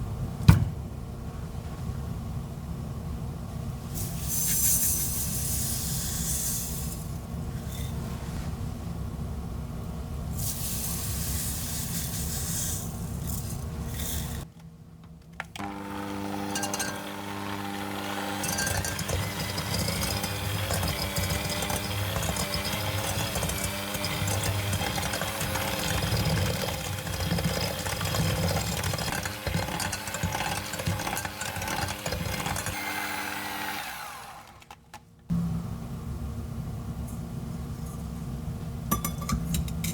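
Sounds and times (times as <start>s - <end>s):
electric mixer running: 15.6s - 34.8s.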